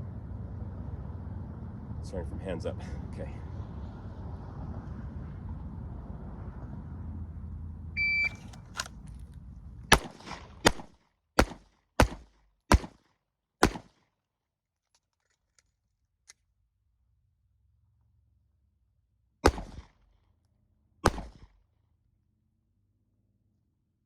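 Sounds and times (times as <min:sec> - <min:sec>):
low steady rumble: 0:00.0 - 0:12.9
shot timer beep: 0:08.0 - 0:08.5
pistol shots: 0:09.9 - 0:13.0, 0:13.6 - 0:13.9, 0:19.4 - 0:20.0, 0:21.0 - 0:21.5.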